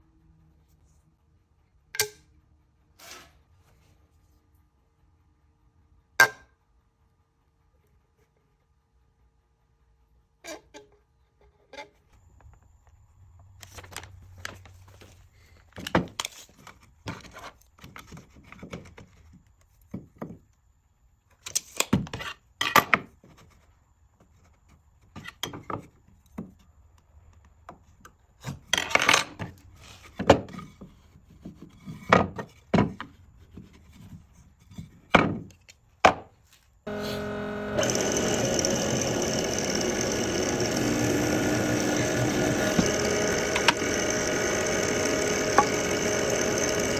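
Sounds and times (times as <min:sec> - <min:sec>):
power tool running: 0:36.9 - 0:46.9
wood knocking and scraping: 0:37.0 - 0:46.9.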